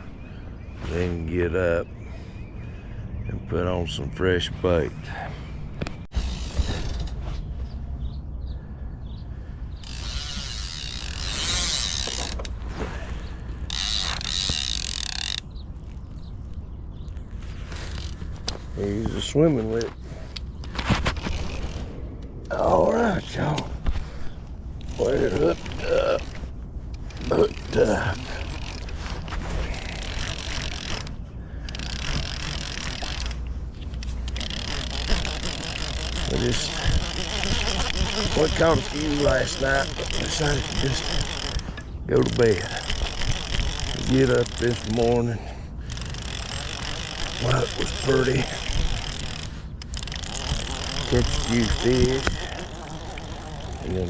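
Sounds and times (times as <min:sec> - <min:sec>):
fishing reel clicker ratcheting: 0:09.8 - 0:12.5, 0:13.7 - 0:15.5, 0:24.8 - 0:29.0, 0:29.7 - 0:54.0.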